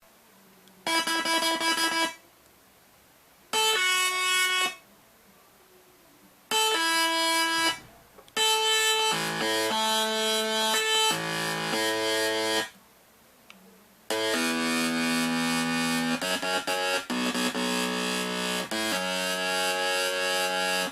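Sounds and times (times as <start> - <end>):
buzzy synthesizer notes: 0.9 - 2.2, 3.5 - 4.8, 6.5 - 12.7, 14.1 - 20.9.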